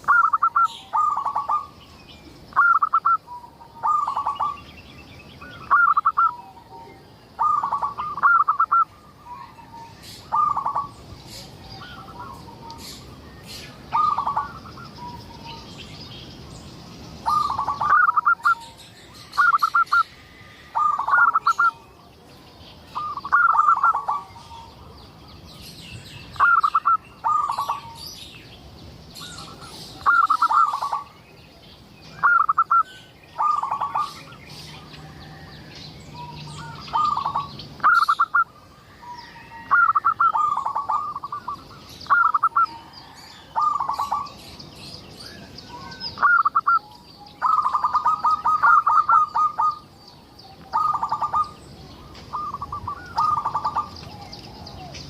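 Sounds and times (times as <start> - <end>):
dove cooing: 0.0 - 1.8, 2.5 - 4.6, 5.5 - 15.7, 17.3 - 21.9, 23.0 - 25.0, 26.4 - 28.0, 29.2 - 31.1, 32.2 - 35.5, 36.2 - 44.4, 45.8 - 49.9, 50.6 - 55.0
small birds chirping: 0.0 - 55.0.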